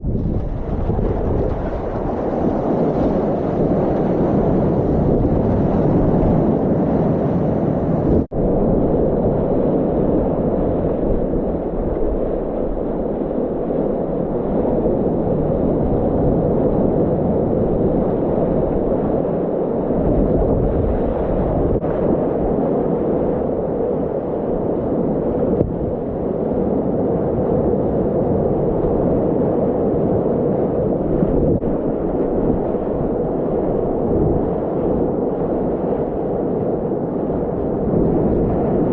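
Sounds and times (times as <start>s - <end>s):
lake waves washing: 0.0s - 8.3s
wind buffeting microphone: 0.0s - 38.9s.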